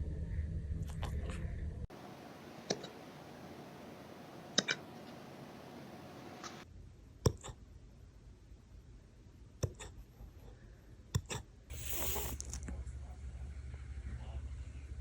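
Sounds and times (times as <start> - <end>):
hissing noise: 11.7 - 12.6.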